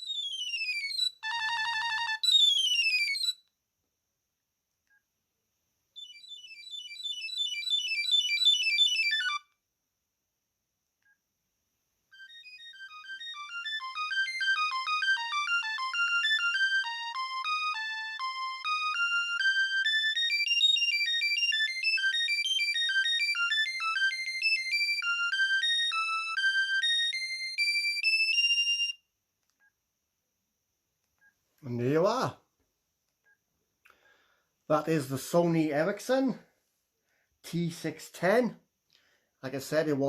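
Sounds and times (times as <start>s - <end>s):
electronic ringtone melodies: 0.0s - 3.4s, 6.0s - 9.5s, 12.1s - 29.1s.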